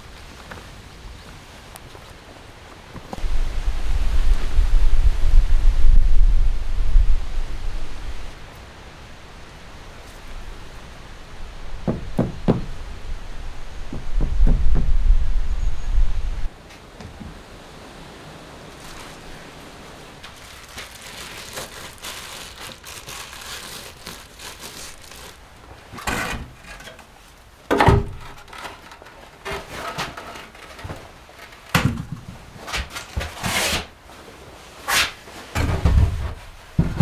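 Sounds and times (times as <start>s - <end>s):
crinkling and rustling: 10.0s - 17.6s, 18.2s - 37.0s
sharp knocks and clatters: 11.8s - 12.9s, 13.8s - 15.5s.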